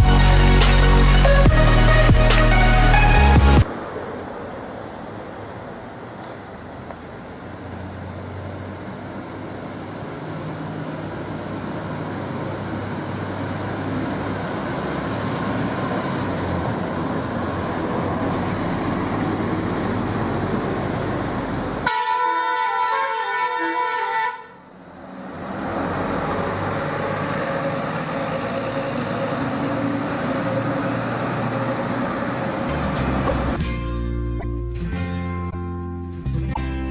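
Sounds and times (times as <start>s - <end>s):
vehicle hum: 0.0s - 22.0s, 23.6s - 36.9s
multi-note bus horn: 21.8s - 24.8s.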